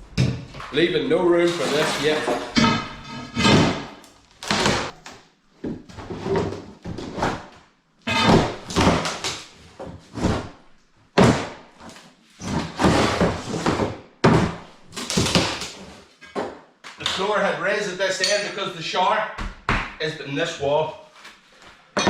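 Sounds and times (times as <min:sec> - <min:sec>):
heavy knocks and thuds: 0:12.5 - 0:15.6.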